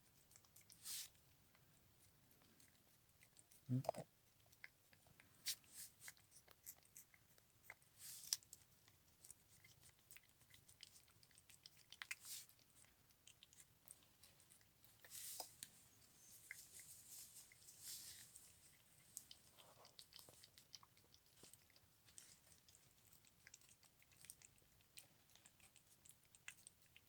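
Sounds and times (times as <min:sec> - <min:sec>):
cat crunching dry treats: 0:02.4 - 0:15.7.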